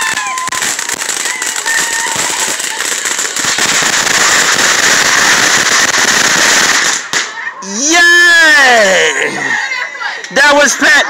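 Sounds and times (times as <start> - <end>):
firework crackling and hissing: 0.0 - 7.8.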